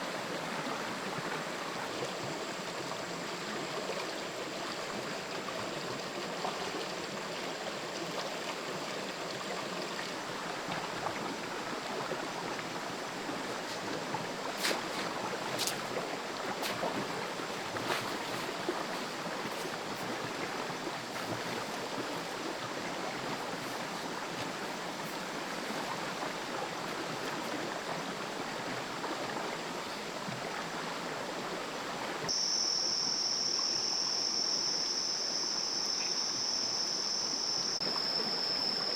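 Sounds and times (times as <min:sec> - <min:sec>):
forest stream flowing: 0:00.0 - 0:38.9
high insect trill: 0:13.0 - 0:28.3, 0:32.3 - 0:38.9.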